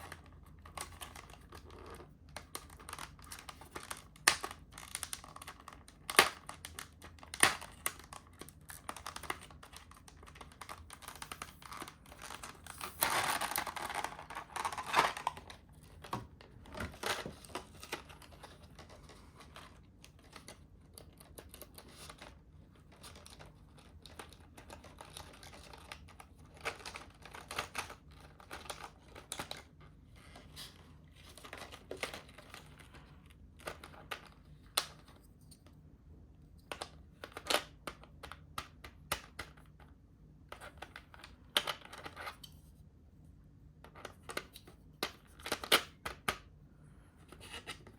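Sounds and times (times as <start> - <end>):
plastic packaging crinkling: 2.6 - 19.8.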